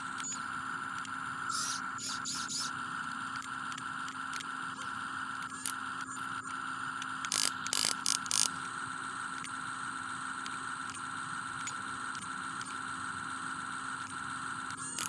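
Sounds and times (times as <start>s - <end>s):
electric motor whine: 0.0s - 15.0s.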